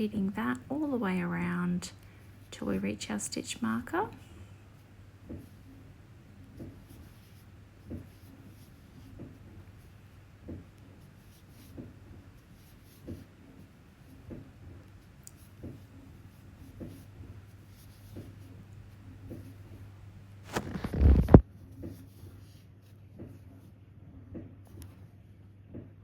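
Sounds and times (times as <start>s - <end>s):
crochet hook rubbing yarn: 4.8s - 19.9s, 20.5s - 23.7s
noisy rustle: 20.4s - 22.6s.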